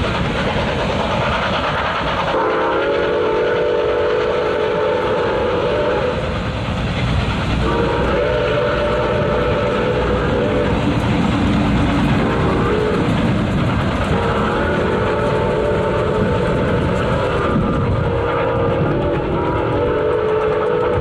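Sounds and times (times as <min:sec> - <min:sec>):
train rumble: 0:00.0 - 0:21.0
steam locomotive whistle: 0:02.3 - 0:06.4, 0:07.6 - 0:10.9, 0:12.1 - 0:13.2, 0:14.1 - 0:21.0.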